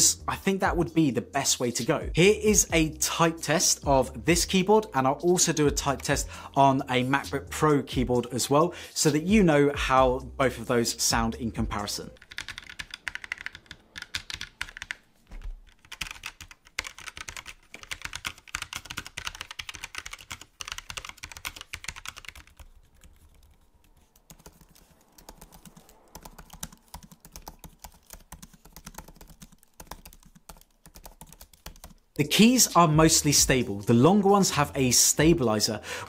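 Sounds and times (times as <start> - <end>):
mechanical keyboard typing: 12.2 - 15.0, 15.6 - 32.0
quiet laptop keyboard typing: 12.2 - 32.2.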